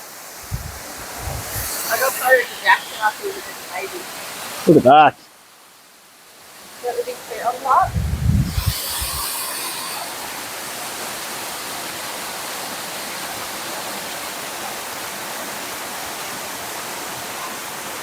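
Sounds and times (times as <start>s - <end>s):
waterfall roaring: 0.0s - 5.1s, 6.7s - 15.2s.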